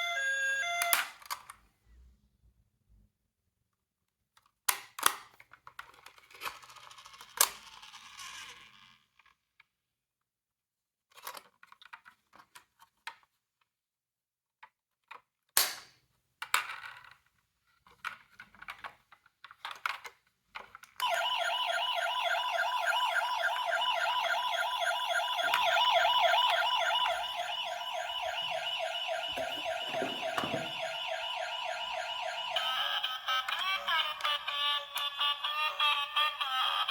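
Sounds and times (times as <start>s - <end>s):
toy sirens warbling: 21.0s - 36.9s.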